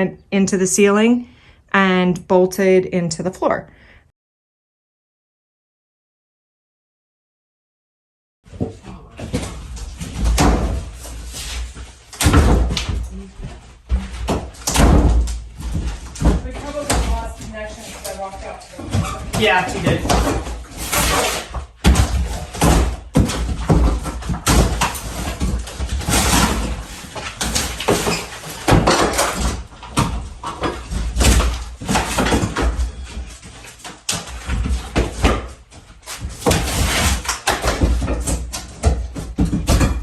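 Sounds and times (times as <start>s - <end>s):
materials scraping and tearing: 15.6s - 38.4s.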